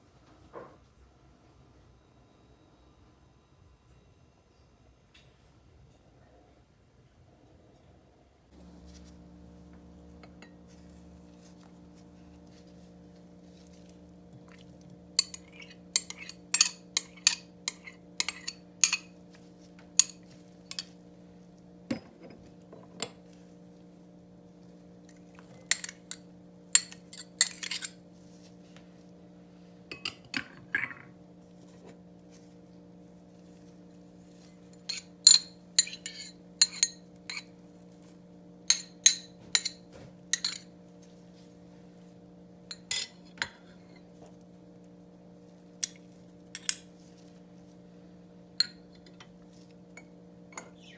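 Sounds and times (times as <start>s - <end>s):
low electrical hum: 0.0s - 50.9s
utensils clinking against dishes: 15.2s - 19.1s, 20.0s - 21.0s, 25.7s - 28.0s, 34.8s - 37.5s, 38.7s - 40.7s, 42.7s - 44.0s, 46.6s - 46.9s.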